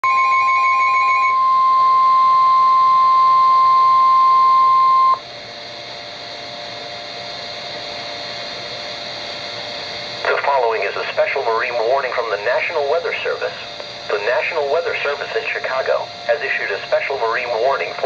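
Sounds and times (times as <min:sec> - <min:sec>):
short pulsed beeps: 0:00.0 - 0:05.2
steady alert beep: 0:00.0 - 0:05.2
faint hum: 0:00.1 - 0:18.0
broadcast hiss: 0:10.2 - 0:18.0.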